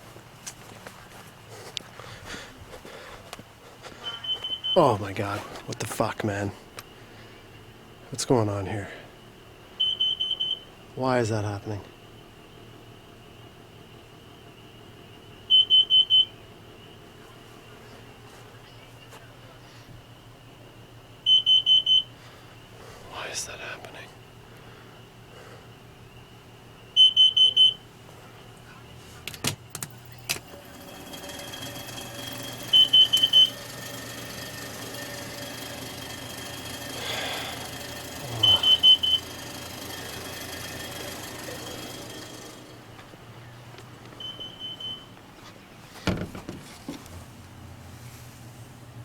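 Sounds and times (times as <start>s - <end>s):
carbon monoxide alarm beeping: 4.0s - 5.0s, 9.8s - 10.7s, 15.4s - 16.4s, 21.2s - 22.2s, 27.0s - 27.9s, 30.0s - 42.8s, 44.2s - 45.1s.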